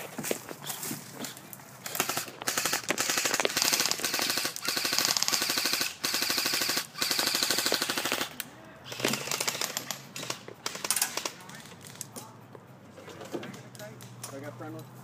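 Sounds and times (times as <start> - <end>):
airsoft gun full auto fire: 1.8 - 11.5.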